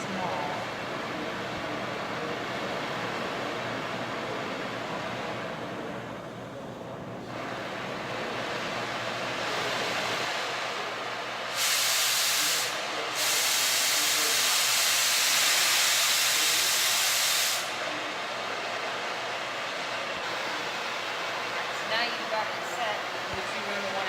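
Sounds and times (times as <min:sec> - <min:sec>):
cutting torch flame hissing: 0:07.5 - 0:23.4
loud high gas hiss: 0:11.4 - 0:18.0.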